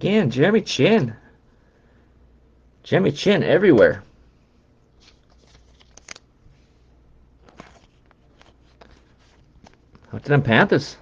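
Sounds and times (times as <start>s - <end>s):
cards clicking and scraping: 4.9s - 6.7s, 7.4s - 10.3s.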